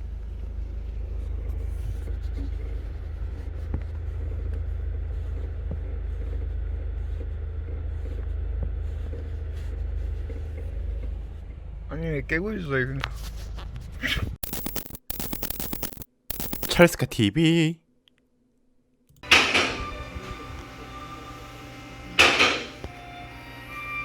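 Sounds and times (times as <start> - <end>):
car engine rumble: 0.0 - 14.0.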